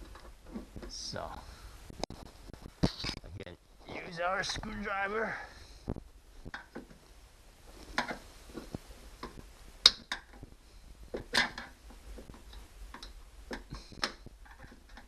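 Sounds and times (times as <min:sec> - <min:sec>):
plastic parts clicking and tapping: 0:11.1 - 0:15.0.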